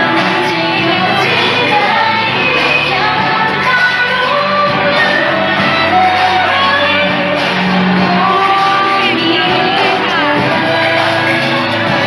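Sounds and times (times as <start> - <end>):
pop song with singing: 0.0 - 12.0.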